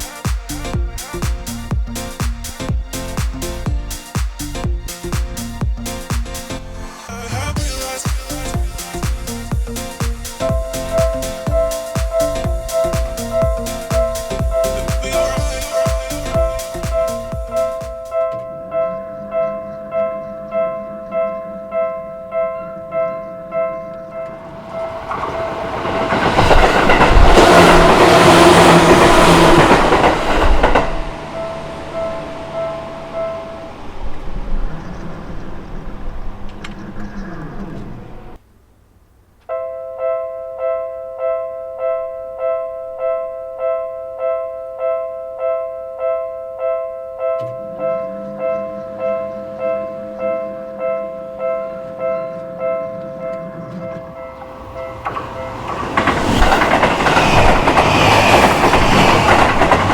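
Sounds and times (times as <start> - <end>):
level-crossing warning bell ringing: 8.6 - 34.2, 39.5 - 59.9.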